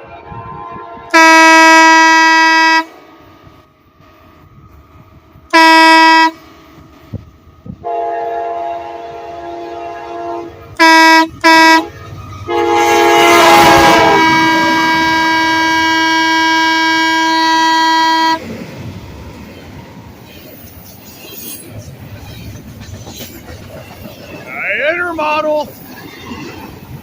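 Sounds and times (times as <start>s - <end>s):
single-note horn blasts: 0.0s - 2.9s, 5.5s - 6.4s, 7.8s - 18.4s
locomotive air horn chord: 0.0s - 3.0s, 5.5s - 6.5s, 7.8s - 18.4s
train rumble: 0.0s - 27.0s.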